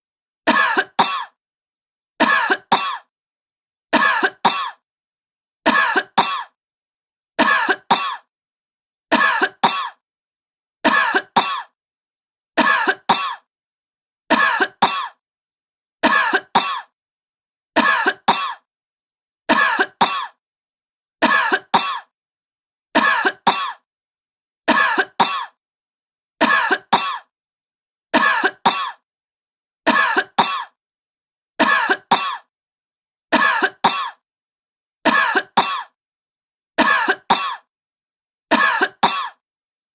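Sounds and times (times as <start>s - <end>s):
woman coughing: 0.5s - 1.4s, 2.2s - 3.1s, 4.0s - 4.8s, 5.7s - 6.6s, 7.4s - 8.3s, 9.1s - 10.0s, 10.9s - 11.8s, 12.6s - 13.5s, 14.4s - 15.2s, 16.0s - 17.0s, 17.8s - 18.7s, 19.5s - 20.4s, 21.2s - 22.1s, 23.0s - 23.9s, 24.7s - 25.6s, 26.4s - 27.3s, 28.2s - 29.0s, 29.9s - 30.8s, 31.6s - 32.5s, 33.4s - 34.2s, 35.1s - 36.0s, 36.8s - 37.7s, 38.5s - 39.4s.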